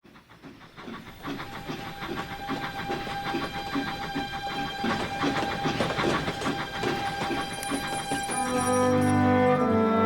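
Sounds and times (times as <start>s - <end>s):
steam locomotive chuffing: 0.0s - 10.0s.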